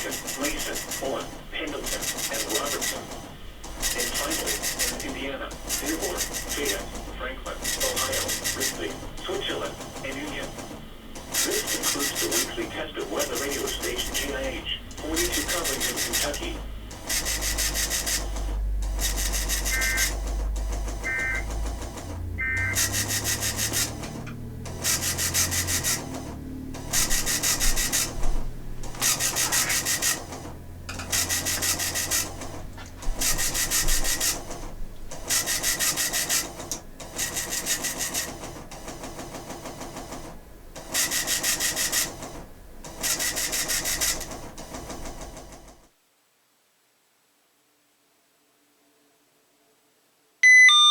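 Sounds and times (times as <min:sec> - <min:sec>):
radio static hiss: 0:00.0 - 0:03.0, 0:11.4 - 0:16.6, 0:19.6 - 0:20.1, 0:29.3 - 0:29.9.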